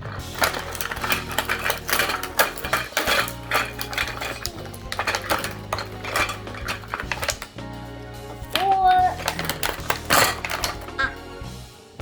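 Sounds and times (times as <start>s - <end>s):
background music: 0.0s - 12.0s
toy dishes clattering: 0.0s - 12.0s.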